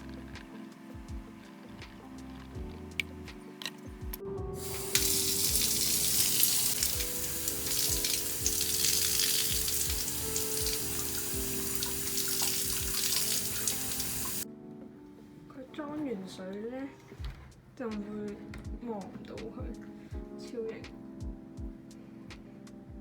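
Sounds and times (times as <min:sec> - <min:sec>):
tap water running into bottle: 0:00.0 - 0:14.4.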